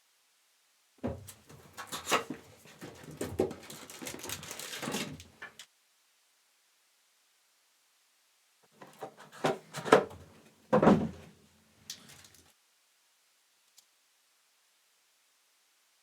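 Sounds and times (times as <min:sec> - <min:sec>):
plastic shrink wrap crackling: 0:03.5 - 0:05.6.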